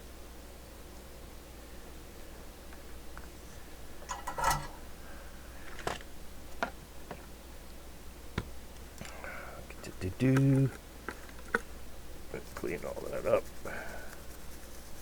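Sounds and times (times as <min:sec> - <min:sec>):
low steady hum: 0:00.0 - 0:15.0
tools clicking and tapping: 0:04.1 - 0:04.8.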